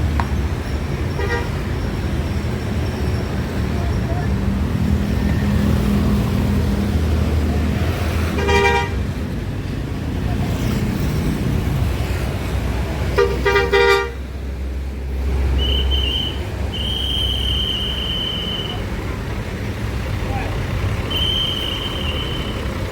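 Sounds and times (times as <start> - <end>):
bus engines: 0.0 - 22.9
passing traffic rumble: 0.0 - 22.9
multi-tone bus horn: 1.2 - 1.7, 8.2 - 9.1, 13.1 - 14.3, 15.6 - 19.0, 21.0 - 22.9.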